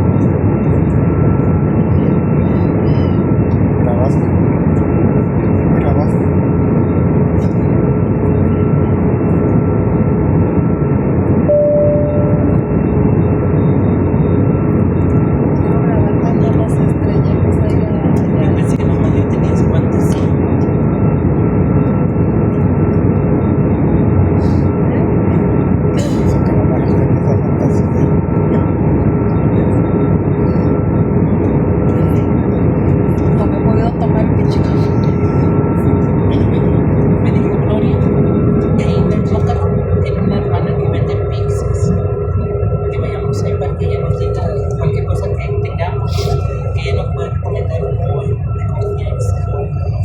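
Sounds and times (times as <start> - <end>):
airliner cabin roar in flight: 0.0 - 50.0
faint steady hum: 0.0 - 50.0
jet engine drone: 0.0 - 50.0
cabin chime ding: 11.5 - 12.8.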